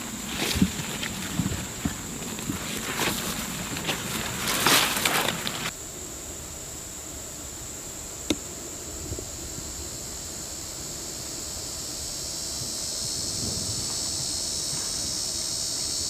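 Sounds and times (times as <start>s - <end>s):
grass rustling and crackling: 0.0s - 5.7s
high insect buzz: 0.0s - 16.0s.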